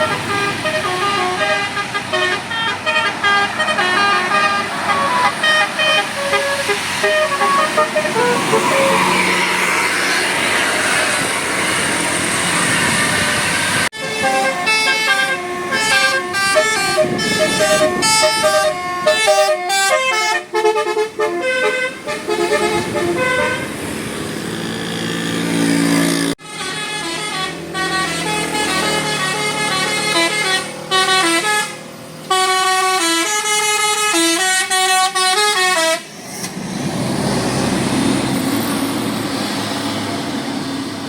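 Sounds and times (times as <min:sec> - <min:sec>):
multi-tone bus air horn melody: 0:00.0 - 0:10.1, 0:12.9 - 0:23.9, 0:26.4 - 0:36.2
bus and road rumble: 0:00.0 - 0:41.0.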